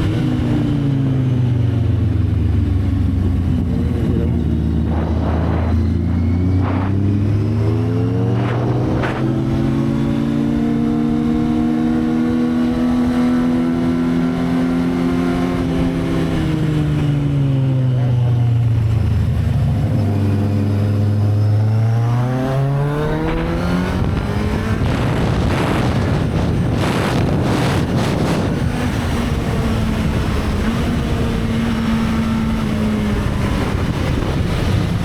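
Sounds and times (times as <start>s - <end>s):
motorcycle engine running: 0.0s - 35.0s
short rushes of noise: 4.7s - 9.8s.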